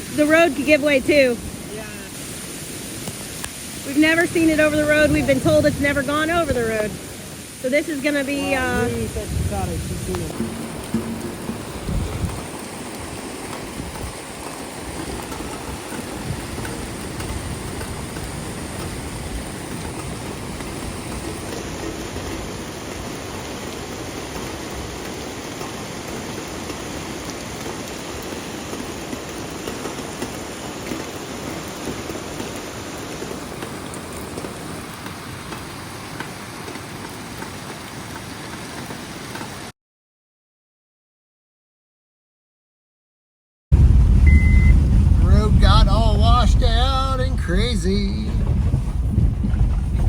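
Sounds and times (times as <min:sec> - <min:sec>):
floodwater rushing: 0:00.0 - 0:39.7, 0:43.8 - 0:50.0.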